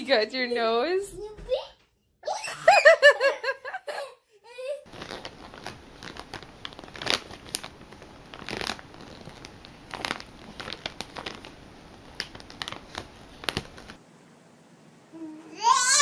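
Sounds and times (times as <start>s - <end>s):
scratchy rustling and crackling: 4.9s - 14.0s.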